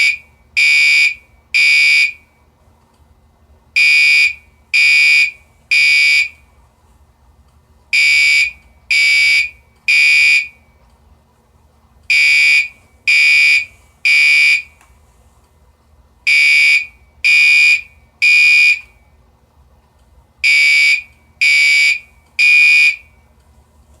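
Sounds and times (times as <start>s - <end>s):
fire alarm beeping: 0.0s - 2.3s, 3.8s - 6.4s, 8.0s - 10.6s, 12.1s - 14.8s, 16.3s - 19.0s, 20.4s - 23.2s.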